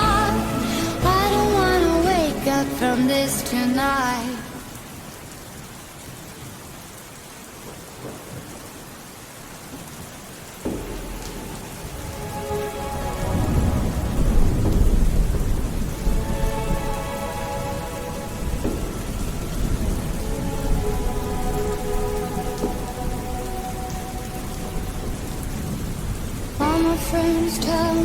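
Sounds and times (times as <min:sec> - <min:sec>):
steady rain: 0:00.0 - 0:28.0
deep thunder rumble: 0:10.6 - 0:28.0.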